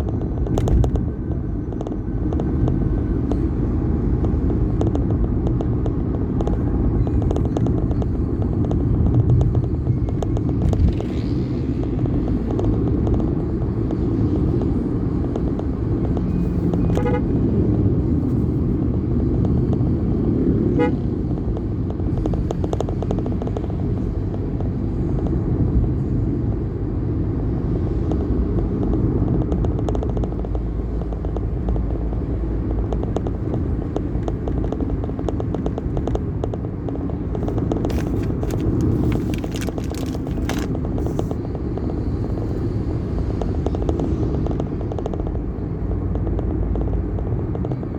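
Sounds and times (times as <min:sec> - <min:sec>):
road traffic rumble: 0:00.0 - 0:47.9
vehicle horn toots: 0:16.8 - 0:17.4, 0:20.7 - 0:21.1.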